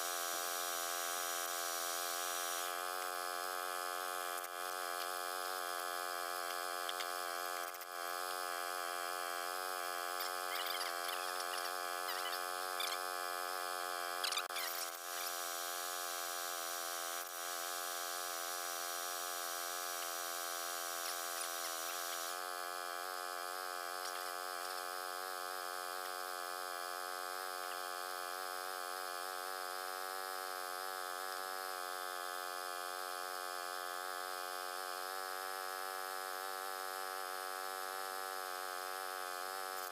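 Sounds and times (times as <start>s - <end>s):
electrical hum: 0.0s - 29.8s.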